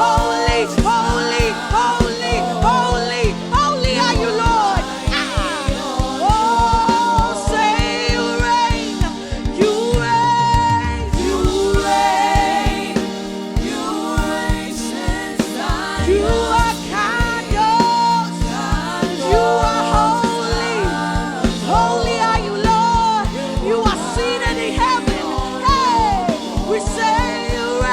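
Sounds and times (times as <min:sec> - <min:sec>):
singers with band: 0:00.0 - 0:27.9
steady drum beat: 0:00.0 - 0:27.9
bass: 0:09.7 - 0:12.3, 0:16.0 - 0:17.8.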